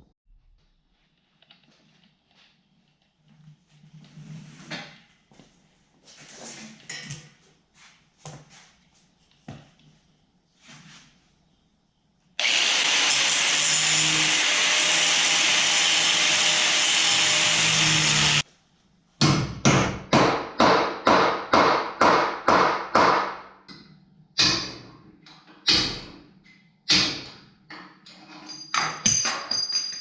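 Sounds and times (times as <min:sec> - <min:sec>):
power cutting tool cutting steel: 0:12.4 - 0:18.4.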